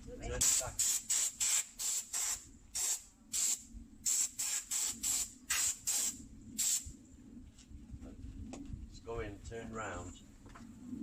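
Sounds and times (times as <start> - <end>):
air blow gun hissing blasts: 0.4 - 6.9.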